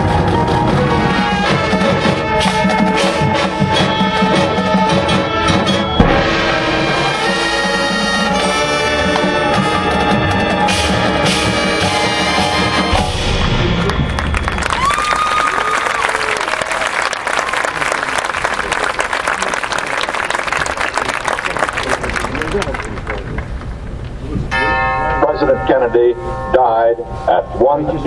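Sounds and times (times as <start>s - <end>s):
sharp percussion hit: 0.0s - 15.0s
marching band playing: 0.0s - 17.6s.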